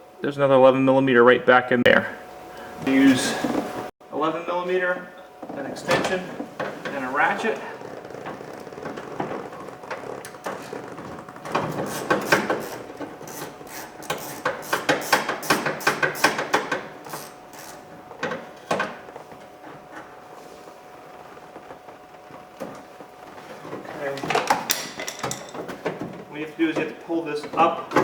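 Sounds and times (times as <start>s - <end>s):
ratchet wrench clicking: 11.9s - 17.8s.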